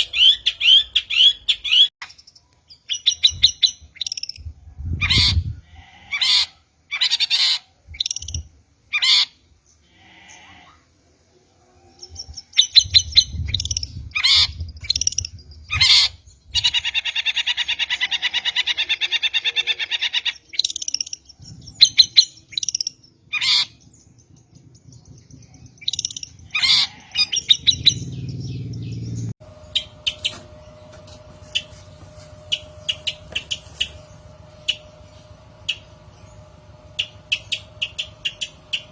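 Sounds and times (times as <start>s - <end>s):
bird harsh scolding calls: 0.0s - 1.9s, 5.0s - 8.3s, 8.9s - 9.4s, 14.1s - 21.1s, 21.8s - 23.8s, 25.8s - 29.0s, 29.6s - 38.9s
faint chirps: 24.1s - 38.9s
steady hum: 29.2s - 38.9s
bird rattling chatter: 29.8s - 34.9s.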